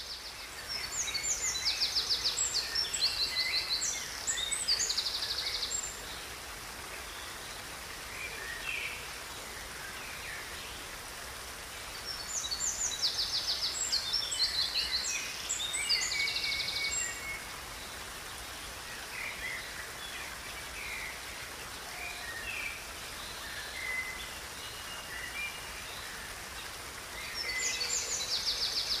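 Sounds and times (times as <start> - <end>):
river rushing: 0.0 - 29.0
wild birds singing: 0.0 - 29.0.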